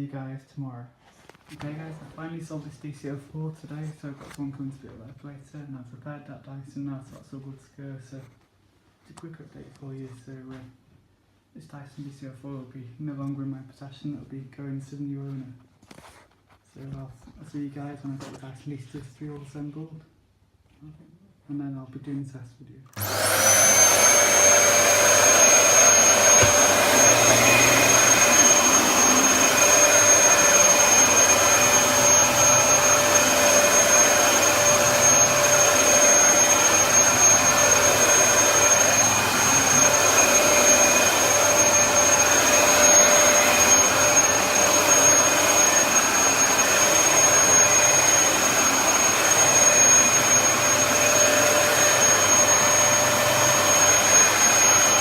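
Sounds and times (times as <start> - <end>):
vacuum cleaner running: 22.9 - 55.0.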